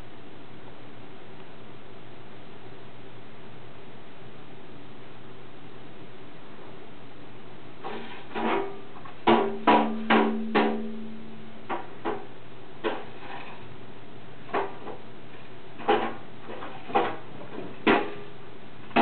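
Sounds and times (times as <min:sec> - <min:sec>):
baby banging a percussion toy: 0:09.3 - 0:11.4.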